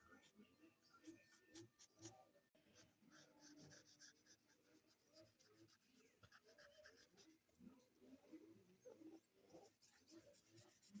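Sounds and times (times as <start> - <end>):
drawing tool scratching paper: 2.8 - 7.4, 9.6 - 11.0.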